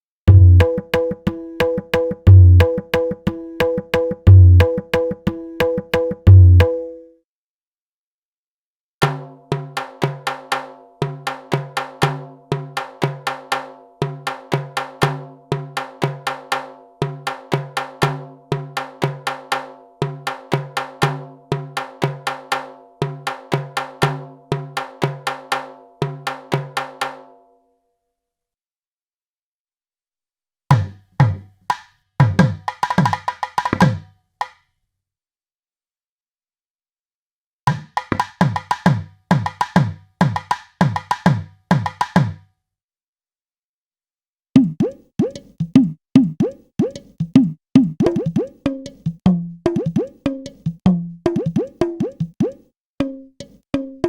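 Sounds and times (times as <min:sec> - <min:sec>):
hand drum rhythm: 0:00.3 - 0:06.8, 0:09.1 - 0:27.2, 0:30.7 - 0:34.0, 0:37.7 - 0:42.4, 0:44.6 - 0:54.0.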